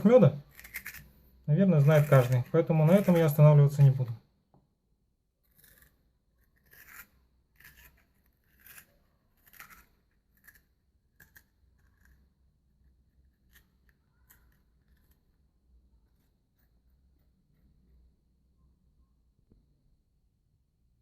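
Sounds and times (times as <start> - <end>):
spoon scraping radish flesh: 0.0 - 4.2, 5.5 - 17.8.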